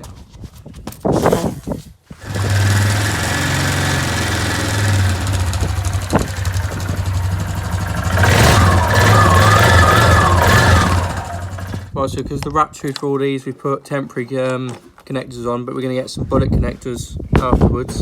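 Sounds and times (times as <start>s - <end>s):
quad bike engine idling: 2.2s - 11.9s.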